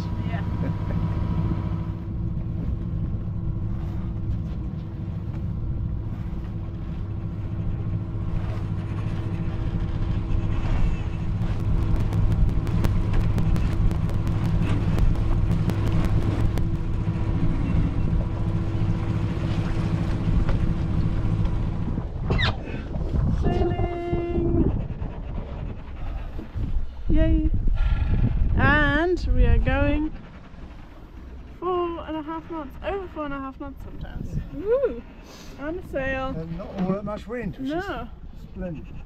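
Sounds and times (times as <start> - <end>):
boat engine droning: 0.0 - 39.0
rapid crackle of sharp clicks: 11.0 - 17.2.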